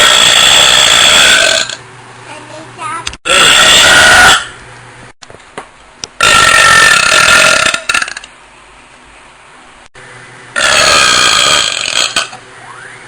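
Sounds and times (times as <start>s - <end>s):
person burping loudly: 0.0s - 1.8s, 3.3s - 4.5s, 6.2s - 8.3s, 10.6s - 12.4s.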